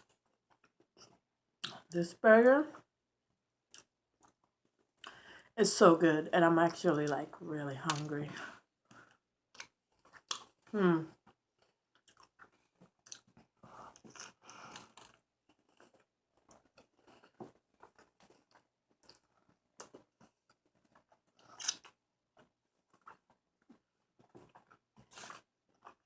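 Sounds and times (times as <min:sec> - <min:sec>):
chewing a burger: 0:00.0 - 0:01.8, 0:03.6 - 0:05.2, 0:08.8 - 0:26.0
wet mouth clicks: 0:21.4 - 0:22.0.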